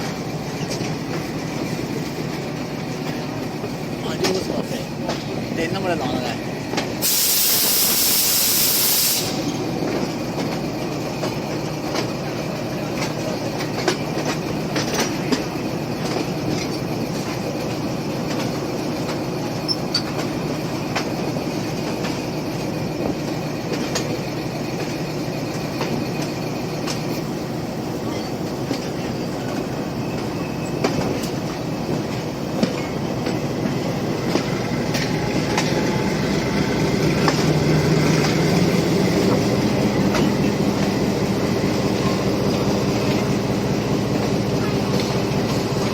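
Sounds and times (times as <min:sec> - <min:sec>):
wheels clicking over rail joints: 0:00.0 - 0:05.8, 0:09.4 - 0:45.9
diesel train rumbling on rails: 0:00.0 - 0:45.9
loud hiss: 0:07.0 - 0:09.6.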